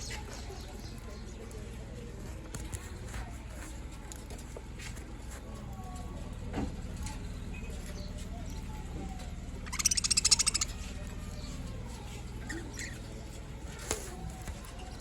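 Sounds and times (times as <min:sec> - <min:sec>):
budgerigars chirping: 0:09.2 - 0:11.6.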